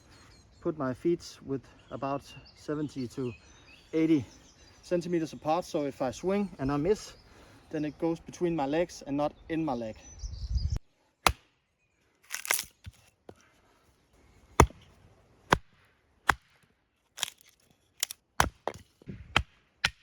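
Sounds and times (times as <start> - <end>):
axe splitting firewood: 11.2 - 11.6, 12.2 - 13.5, 14.5 - 20.0.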